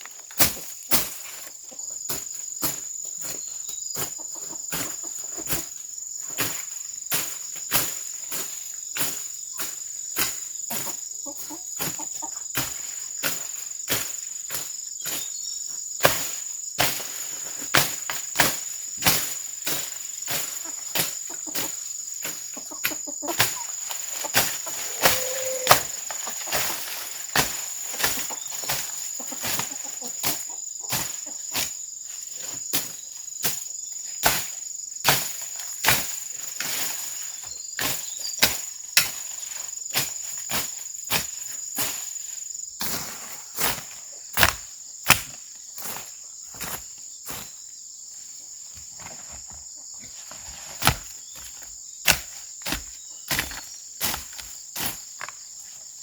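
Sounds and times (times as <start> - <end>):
high insect drone: 0.1 - 48.8
hand tool strikes: 52.1 - 54.5.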